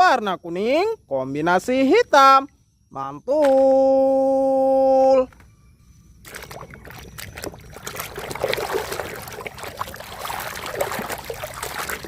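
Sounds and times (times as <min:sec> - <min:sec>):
water splashing and trickling: 0:06.2 - 0:12.0.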